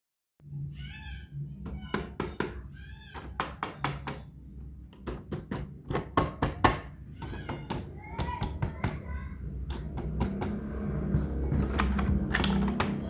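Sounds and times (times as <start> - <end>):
irregular knocks and clicks: 3.2 - 10.8.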